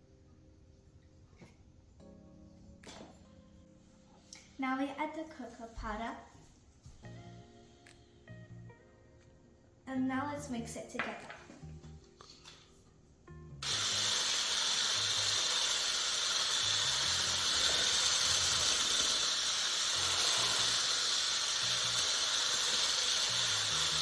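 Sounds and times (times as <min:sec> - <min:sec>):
faint background music: 0:00.0 - 0:24.0
electric hand mixer hissing: 0:13.6 - 0:24.0.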